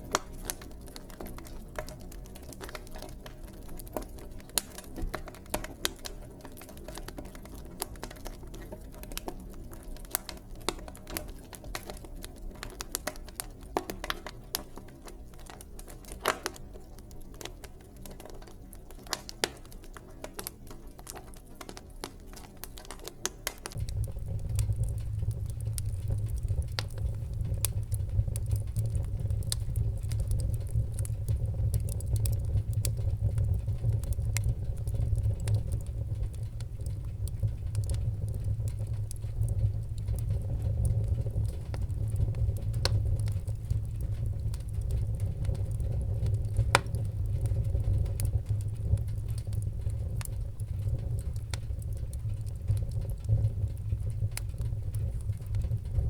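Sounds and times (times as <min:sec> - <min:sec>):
wood fire crackling and popping: 0:00.0 - 0:56.0
low steady rumble: 0:23.7 - 0:56.0.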